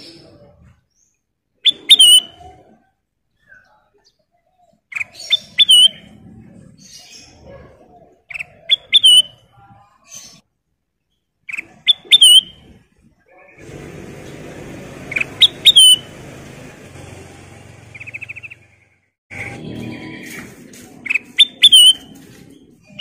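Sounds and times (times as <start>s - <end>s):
bulbul calling: 1.6s - 2.8s, 4.9s - 6.2s, 8.3s - 9.4s, 11.5s - 12.7s, 14.8s - 16.2s, 17.9s - 18.8s, 21.0s - 22.2s.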